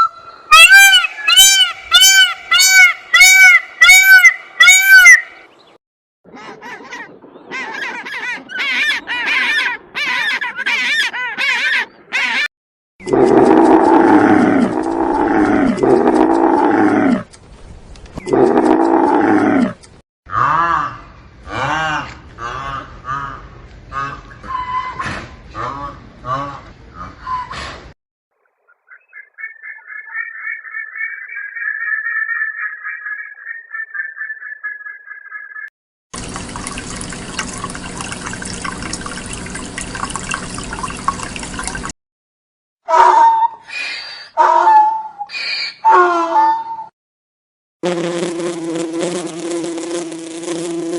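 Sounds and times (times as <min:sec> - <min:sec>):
large animal calling loudly: 0:00.0 - 0:05.3, 0:42.9 - 0:46.9
water running and splashing: 0:36.2 - 0:41.9.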